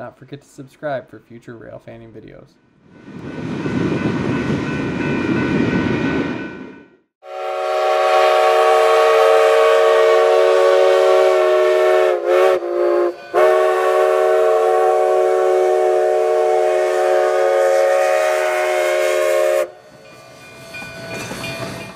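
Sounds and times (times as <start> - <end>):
locomotive horn blast: 7.2 - 19.7.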